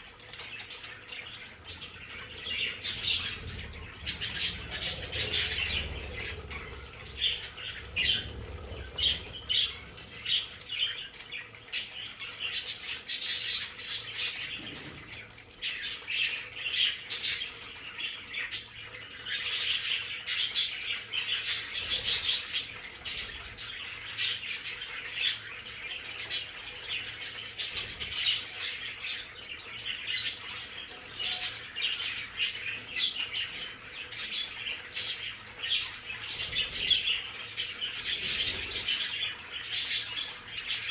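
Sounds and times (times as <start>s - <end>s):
budgerigars chattering: 1.6s - 10.9s.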